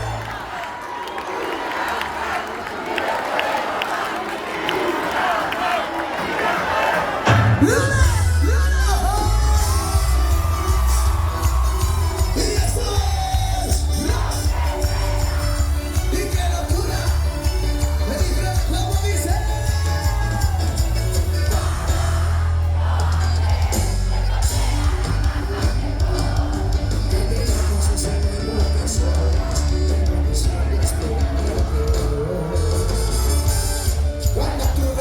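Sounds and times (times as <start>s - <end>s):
crowd shouting and whooping: 0.0s - 35.0s
live band with singer: 7.2s - 35.0s.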